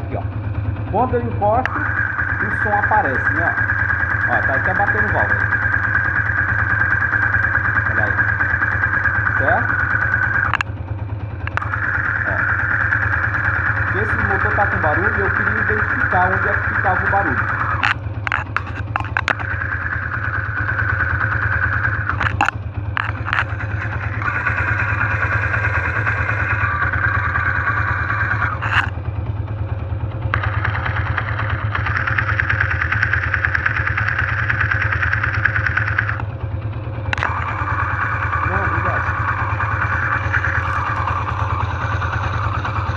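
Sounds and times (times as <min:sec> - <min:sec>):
engine mechanical clatter: 0:00.0 - 0:42.9
motorcycle engine idling: 0:00.0 - 0:42.9
tool clicks: 0:09.7 - 0:10.7, 0:11.4 - 0:12.8, 0:13.4 - 0:20.0, 0:21.7 - 0:29.0, 0:37.1 - 0:38.2.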